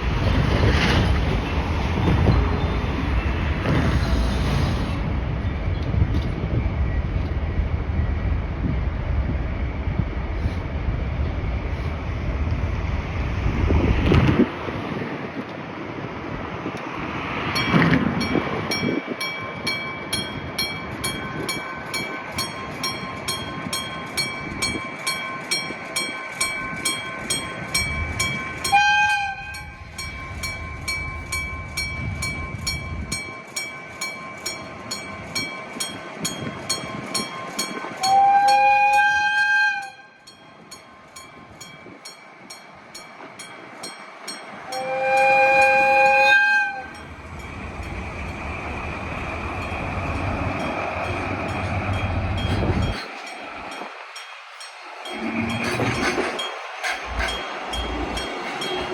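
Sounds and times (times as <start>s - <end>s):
freight train rumbling: 0.0s - 58.9s
level crossing warning bell: 1.6s - 3.6s, 17.2s - 58.9s
train horn blasts: 28.6s - 29.9s, 38.0s - 40.3s, 44.7s - 47.0s.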